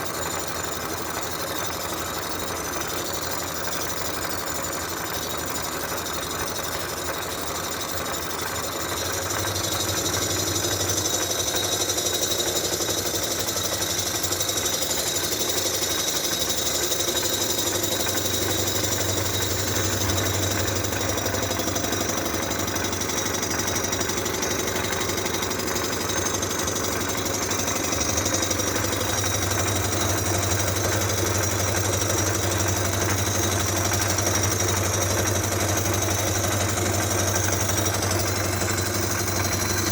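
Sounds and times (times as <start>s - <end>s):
machine humming: 8.2s - 39.9s.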